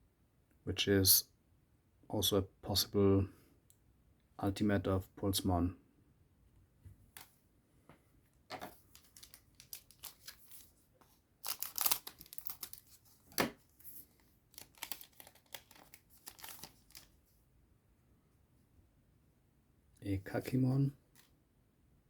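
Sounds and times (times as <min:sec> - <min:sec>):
foil pack tearing and crinkling: 0:09.0 - 0:10.6, 0:11.4 - 0:13.0, 0:14.5 - 0:17.1.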